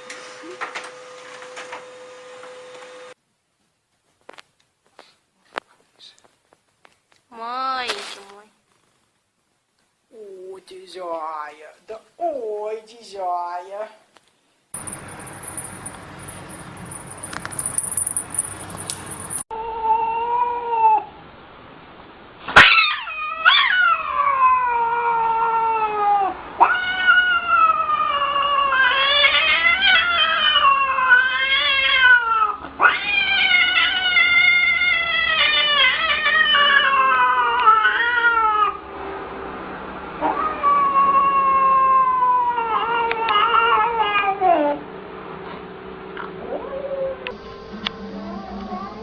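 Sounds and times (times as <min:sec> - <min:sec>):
cat yowling: 0:19.5 - 0:21.1, 0:22.6 - 0:38.8, 0:40.2 - 0:44.8
cat meowing: 0:26.6 - 0:38.8, 0:40.3 - 0:44.8.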